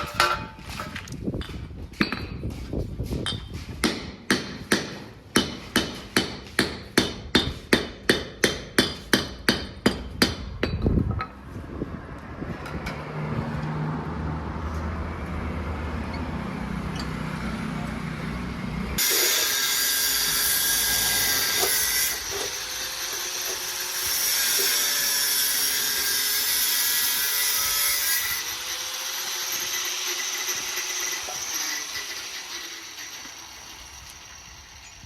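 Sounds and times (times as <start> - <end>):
power tool grinding metal: 19.0 - 35.0.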